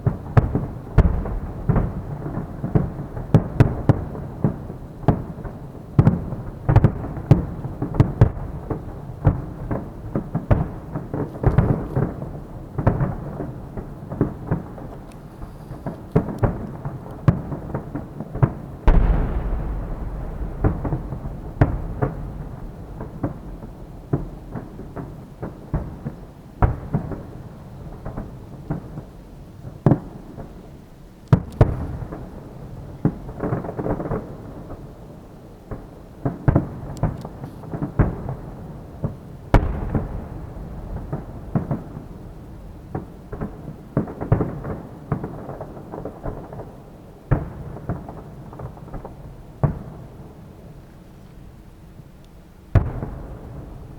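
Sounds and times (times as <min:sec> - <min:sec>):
fireworks bursting: 0:14.2 - 0:27.0, 0:39.0 - 0:45.4, 0:52.7 - 0:53.9
rumbling echo: 0:18.9 - 0:24.5.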